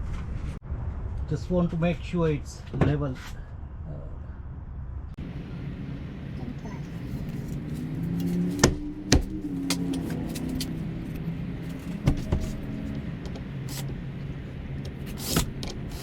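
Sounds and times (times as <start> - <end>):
low engine-like hum: 3.3 - 16.0
sharp knocks: 8.0 - 10.3, 11.8 - 14.0.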